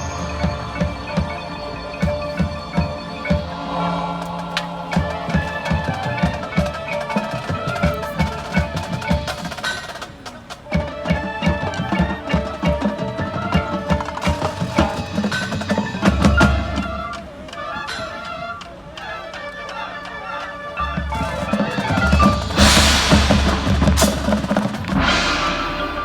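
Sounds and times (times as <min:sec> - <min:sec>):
mallet percussion: 0:00.0 - 0:18.3, 0:20.8 - 0:26.0
marching band playing: 0:00.0 - 0:26.0
heavy low drum hit: 0:21.0 - 0:26.0.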